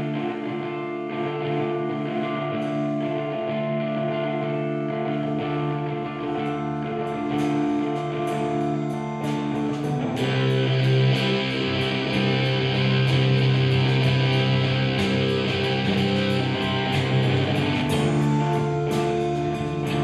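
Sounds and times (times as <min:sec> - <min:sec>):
electric guitar chords: 0:00.0 - 0:20.0
low bass: 0:05.0 - 0:20.0.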